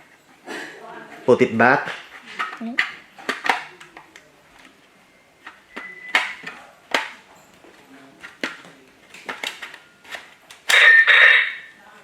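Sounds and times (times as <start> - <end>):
toy gun plastic clicks and knocks: 1.9 - 4.7, 5.4 - 7.2, 8.2 - 11.6.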